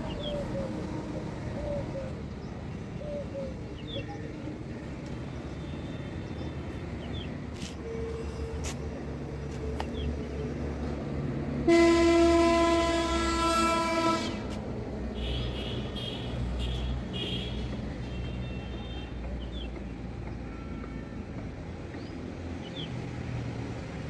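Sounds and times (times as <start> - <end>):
low rumble of traffic: 0.0 - 24.0
loud horn: 11.6 - 14.5.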